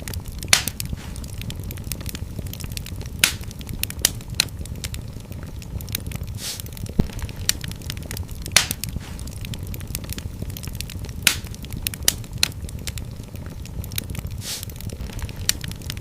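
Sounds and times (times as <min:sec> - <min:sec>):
fire crackling and popping: 0:00.0 - 0:16.0
fire hissing: 0:00.0 - 0:16.0
low rumble of flames: 0:00.0 - 0:16.0.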